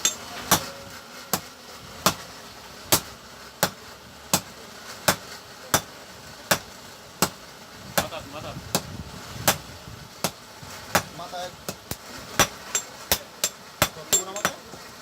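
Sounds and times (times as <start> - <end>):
hammer striking metal: 0.0 - 2.2, 10.2 - 14.7.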